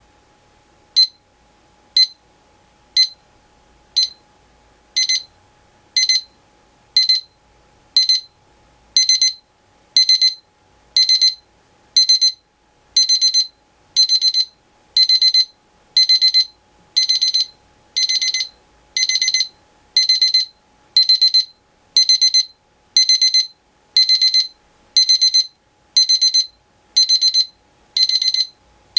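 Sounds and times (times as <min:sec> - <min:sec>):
alarm clock beeping: 0:04.0 - 0:04.2, 0:05.0 - 0:05.3, 0:06.0 - 0:06.3, 0:07.0 - 0:07.2, 0:08.0 - 0:08.3, 0:09.0 - 0:09.4, 0:10.0 - 0:10.4, 0:11.0 - 0:11.4, 0:12.0 - 0:12.4, 0:13.0 - 0:28.5.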